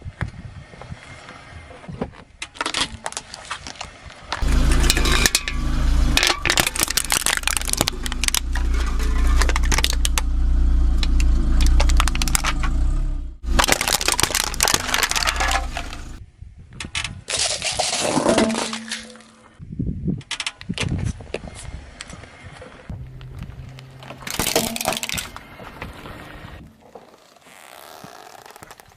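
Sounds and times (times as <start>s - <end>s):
car engine running low: 4.4s - 16.2s, 22.6s - 26.7s
tyre crushing objects: 6.2s - 10.3s, 13.4s - 16.2s.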